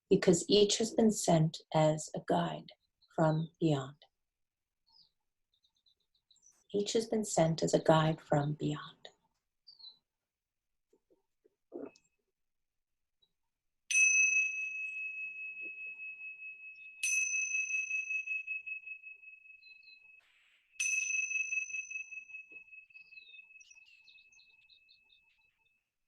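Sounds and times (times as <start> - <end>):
meditation bell ringing: 13.9 - 24.0.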